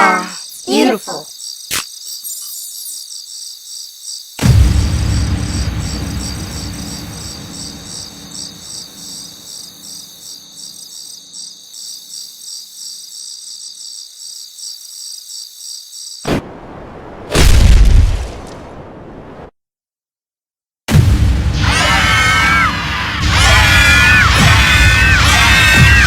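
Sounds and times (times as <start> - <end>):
crickets chirping: 0.0 - 16.3
boom rumble: 4.4 - 8.7, 16.4 - 19.0
loud boom: 4.4 - 8.7, 17.3 - 18.7, 20.9 - 22.1.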